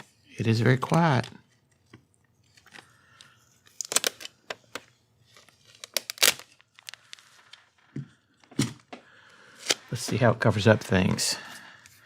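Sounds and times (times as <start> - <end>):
packing tape pulled off roll: 3.7 - 4.8, 5.7 - 7.6.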